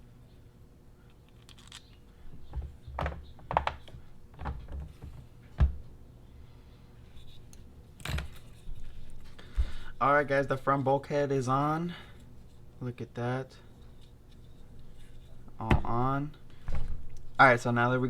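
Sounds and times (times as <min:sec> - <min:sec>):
plastic parts clicking: 0:01.2 - 0:02.0.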